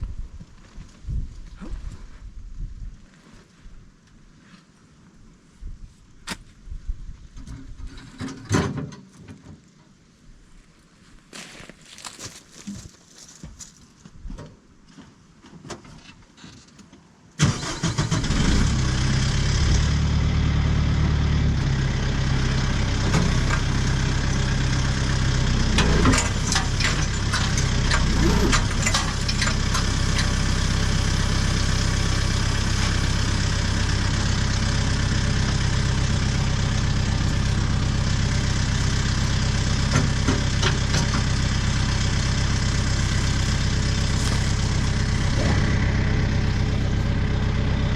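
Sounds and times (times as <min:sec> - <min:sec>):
faint shuffling: 0:10.4 - 0:14.2
tractor engine starting and idling: 0:17.4 - 0:47.9.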